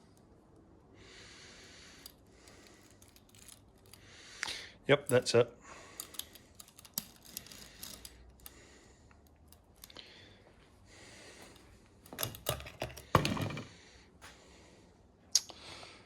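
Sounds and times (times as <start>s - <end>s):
objects being handled: 2.0s - 4.0s, 6.0s - 8.6s, 11.4s - 13.8s.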